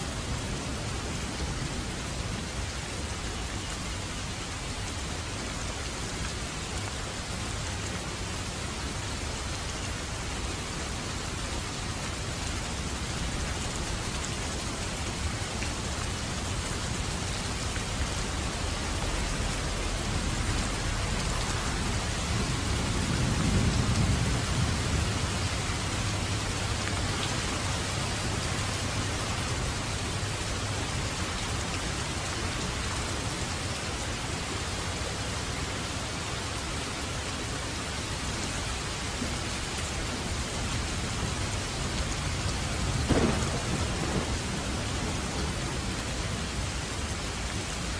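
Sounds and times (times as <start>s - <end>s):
heavy rain falling: 0.0s - 47.9s
low rumble of thunder: 9.2s - 32.8s, 40.8s - 47.8s.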